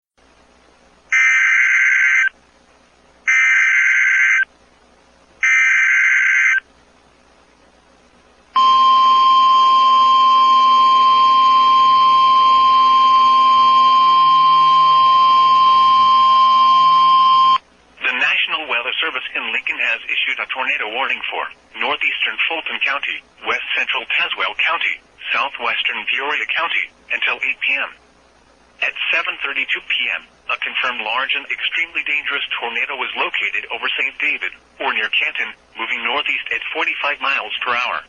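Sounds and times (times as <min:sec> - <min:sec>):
digital data tone bursts: 0:03.3 - 0:04.5.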